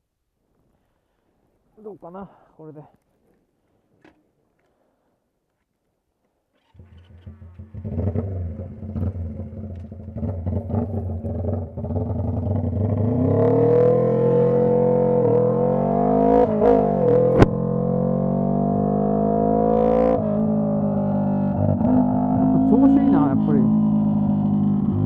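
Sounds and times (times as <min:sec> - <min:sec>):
motorcycle engine accelerating: 0:06.6 - 0:25.0.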